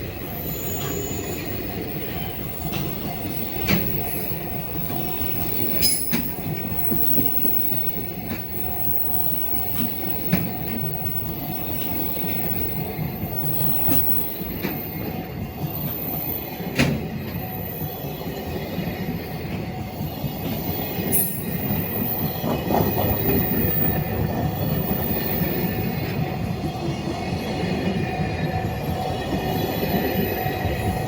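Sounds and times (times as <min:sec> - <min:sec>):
freight train wagons rolling: 0:00.0 - 0:17.7, 0:20.2 - 0:26.3.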